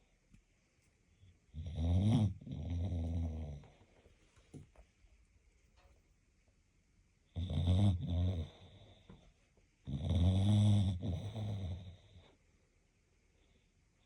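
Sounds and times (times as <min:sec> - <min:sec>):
dog snoring: 0:01.5 - 0:03.8, 0:07.3 - 0:09.1, 0:09.8 - 0:12.4.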